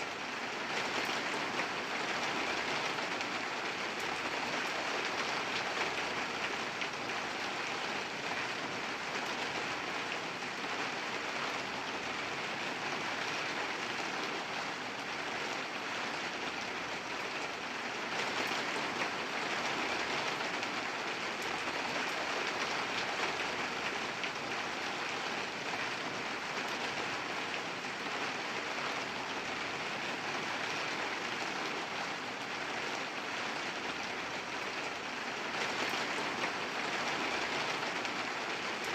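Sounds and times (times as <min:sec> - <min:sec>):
steady rain: 0:00.0 - 0:38.9.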